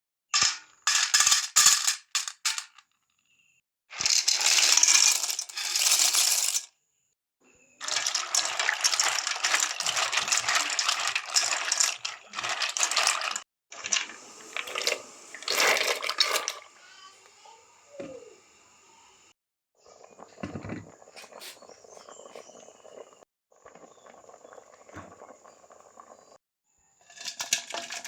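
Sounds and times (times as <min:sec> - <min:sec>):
kitchenware clinking and rattling: 0:07.8 - 0:16.6, 0:20.3 - 0:23.1, 0:27.0 - 0:28.0.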